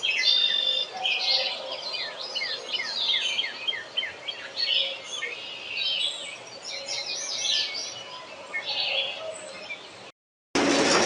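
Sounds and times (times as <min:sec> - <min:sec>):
wild birds singing: 0:00.0 - 0:10.1
outdoor background noise: 0:00.0 - 0:11.0.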